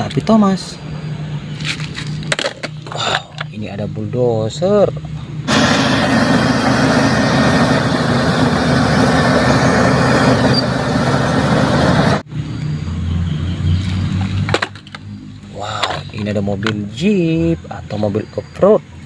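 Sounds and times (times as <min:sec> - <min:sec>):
bulldozer engine: 0:05.4 - 0:13.1
low rumble: 0:05.5 - 0:12.2.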